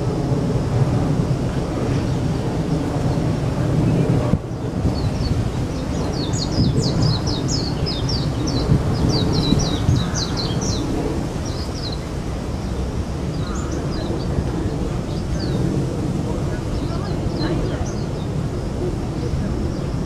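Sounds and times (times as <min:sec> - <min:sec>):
steady low rumble: 0:00.0 - 0:20.0
small bird chirping: 0:04.5 - 0:12.1.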